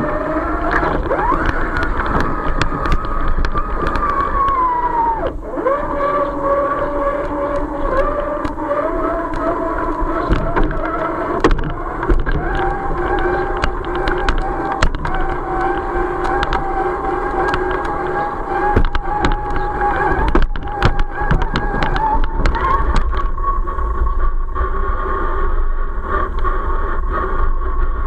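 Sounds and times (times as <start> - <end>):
electric motor whining: 0.0 - 28.0
clicks and knocks: 9.2 - 23.4.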